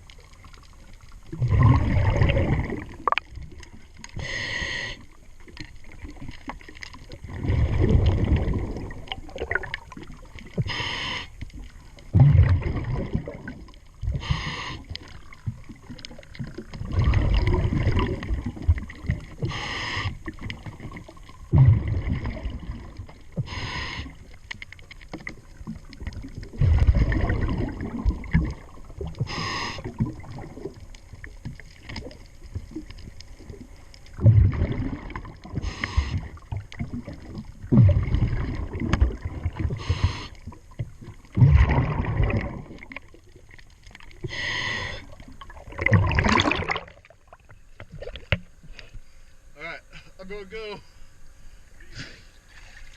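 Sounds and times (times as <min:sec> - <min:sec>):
exhaled bubbles rumbling underwater: 0:00.0 - 0:48.8
scuba regulator inhale hiss: 0:04.2 - 0:05.1, 0:10.6 - 0:11.4, 0:14.1 - 0:15.0, 0:19.4 - 0:20.3, 0:23.4 - 0:24.2, 0:29.2 - 0:30.0, 0:35.6 - 0:36.4, 0:39.7 - 0:40.5, 0:44.2 - 0:45.2, 0:51.9 - 0:52.4.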